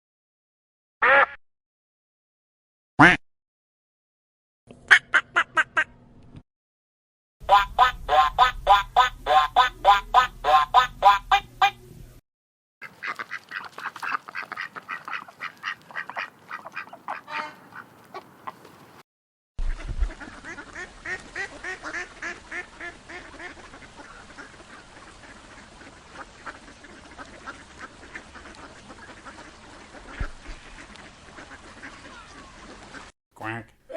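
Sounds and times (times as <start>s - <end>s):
ducks quacking: 7.4s - 11.8s, 12.8s - 19.0s, 19.8s - 33.7s.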